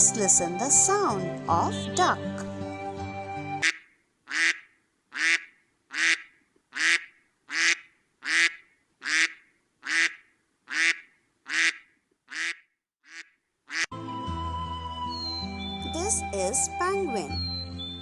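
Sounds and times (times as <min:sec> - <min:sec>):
duck quacking: 0:03.6 - 0:13.9.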